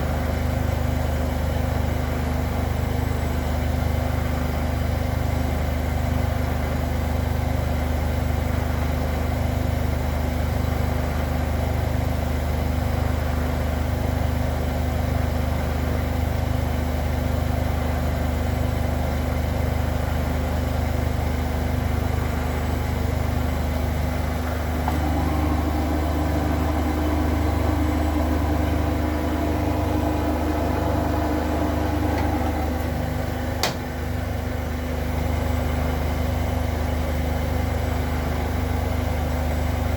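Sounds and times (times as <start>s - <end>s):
washing machine spinning: 0.0s - 39.9s
sharp click: 33.6s - 33.9s.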